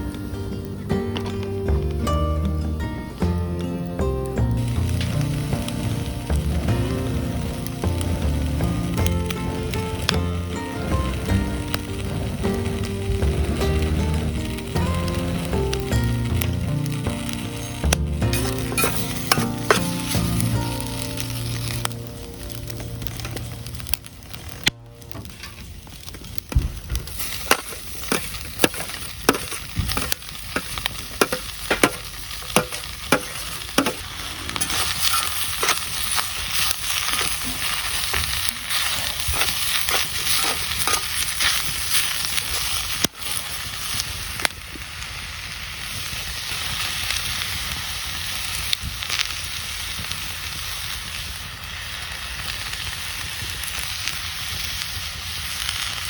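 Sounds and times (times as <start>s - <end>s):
food sizzling in pan: 0.0s - 56.0s
sharp taps in hot pan: 17.9s - 20.7s, 26.5s - 34.0s
utensil stirring clicks: 27.2s - 42.0s.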